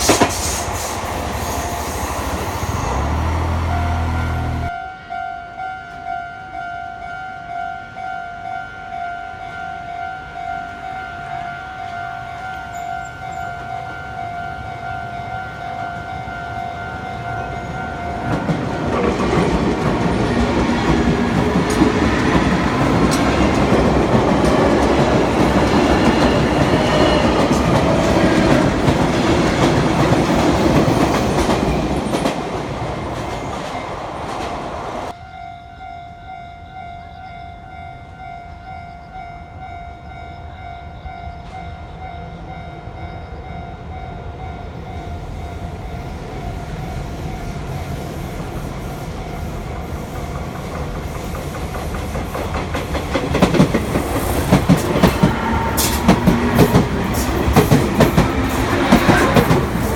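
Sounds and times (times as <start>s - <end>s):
train wheel and rail noise: 0.0s - 59.9s
level crossing warning bell: 3.6s - 19.6s, 35.1s - 46.6s.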